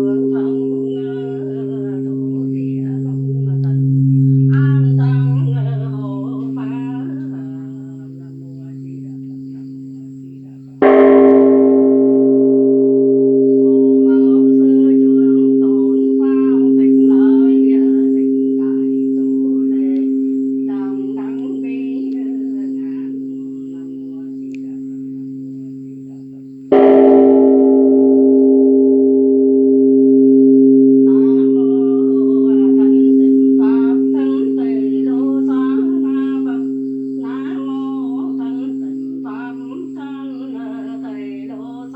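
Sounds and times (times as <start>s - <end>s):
voice chanting: 0.0s - 11.6s, 13.2s - 29.6s, 30.5s - 41.9s
bell ringing with low hum: 0.0s - 41.9s.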